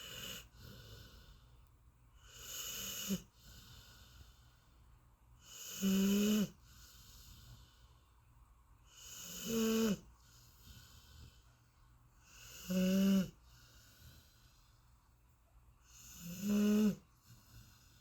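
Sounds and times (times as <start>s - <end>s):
dog snoring: 0.0s - 1.4s, 2.2s - 4.3s, 5.4s - 7.7s, 8.9s - 11.4s, 12.2s - 14.4s, 15.8s - 18.0s
dog breathing: 0.0s - 1.6s, 8.9s - 14.9s.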